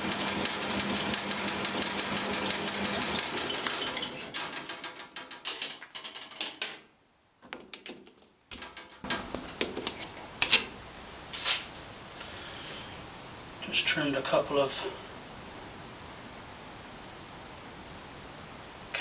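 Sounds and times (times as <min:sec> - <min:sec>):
rapid metallic clicking and rattling: 0:00.0 - 0:06.8, 0:07.5 - 0:10.8
machine hum: 0:08.6 - 0:19.0.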